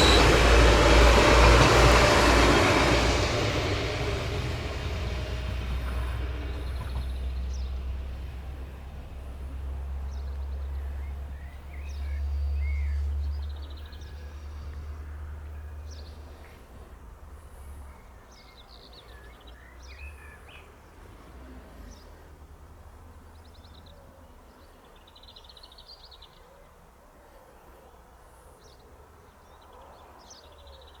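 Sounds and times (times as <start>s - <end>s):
low rumble: 0.0s - 16.2s
steam train passing: 0.0s - 21.5s
birds chirping: 0.0s - 26.7s.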